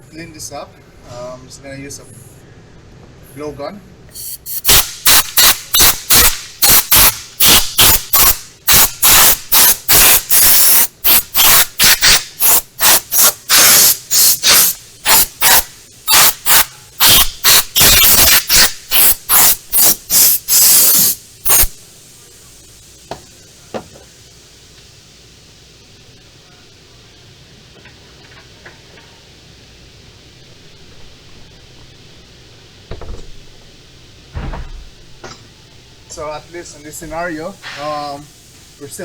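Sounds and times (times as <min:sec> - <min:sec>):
compressed air blasts: 0:04.1 - 0:24.6, 0:30.3 - 0:35.5, 0:37.5 - 0:38.9.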